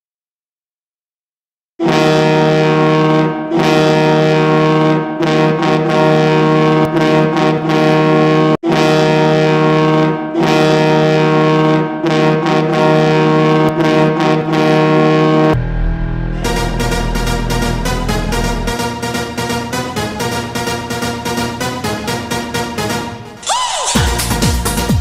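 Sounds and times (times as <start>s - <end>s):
goal horn low tone: 1.8s - 19.7s
song with a beat: 23.4s - 25.0s.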